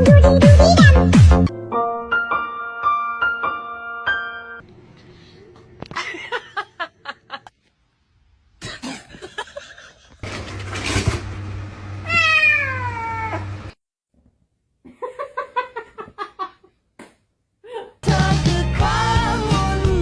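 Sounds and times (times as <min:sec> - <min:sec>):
cat meowing: 0:12.1 - 0:13.5.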